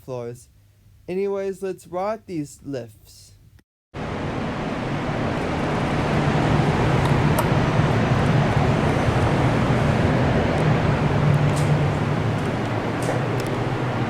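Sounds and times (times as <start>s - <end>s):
low hum: 4.0s - 14.0s
mechanical rushing noise: 4.0s - 14.0s.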